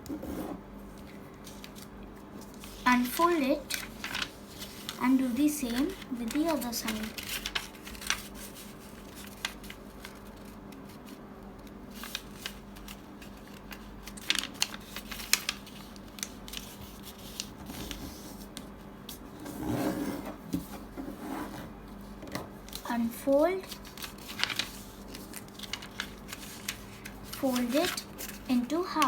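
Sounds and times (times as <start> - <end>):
faint steady hum: 0.0 - 29.0
paper crackling and rustling: 0.9 - 19.3, 22.4 - 29.0.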